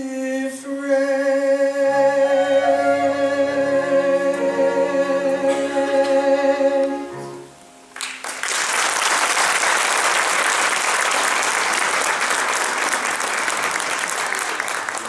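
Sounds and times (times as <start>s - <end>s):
person singing: 0.0s - 7.5s
audience applauding: 7.9s - 15.0s.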